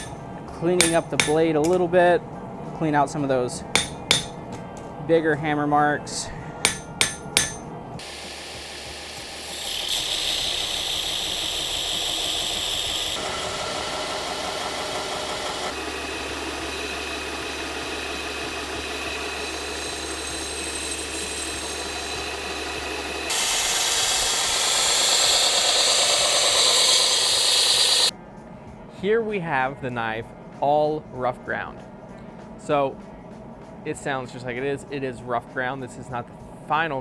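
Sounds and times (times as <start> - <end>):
grinder grinding steel blade: 0.0 - 1.9, 3.7 - 4.6, 6.2 - 28.1.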